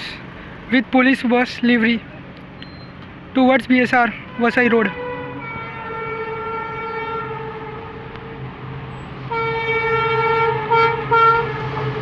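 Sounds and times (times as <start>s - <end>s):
locomotive horn blasts: 4.2s - 8.2s, 9.3s - 12.0s.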